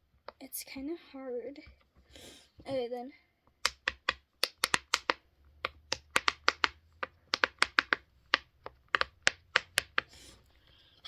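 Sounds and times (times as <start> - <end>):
fidget toy bubbles popping: 3.6 - 10.2.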